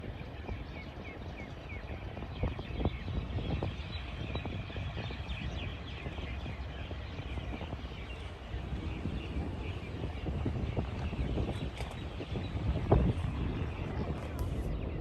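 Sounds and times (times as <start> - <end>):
small birds chirping: 0.0 - 15.0
low rumble: 8.7 - 15.0.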